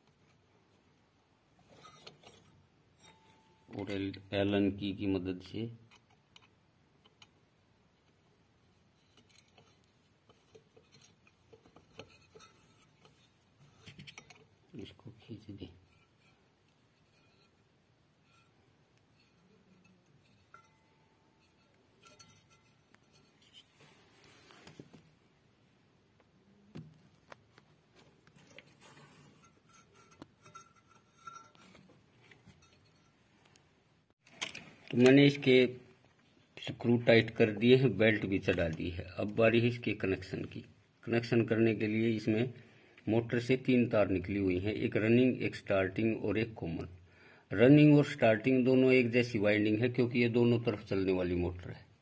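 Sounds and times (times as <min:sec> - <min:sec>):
hand tool clicks and scraping: 0:09.0 - 0:14.7, 0:18.3 - 0:23.8, 0:34.2 - 0:35.5.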